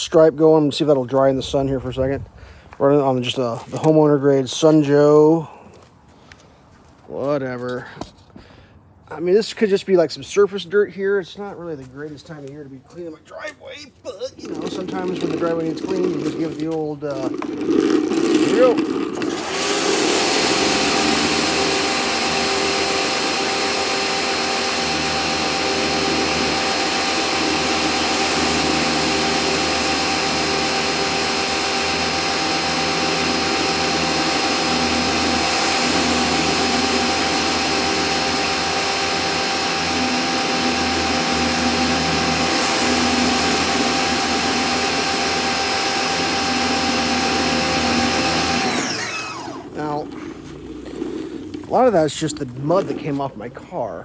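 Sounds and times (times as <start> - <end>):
pressure washer whine: 14.1 - 53.7.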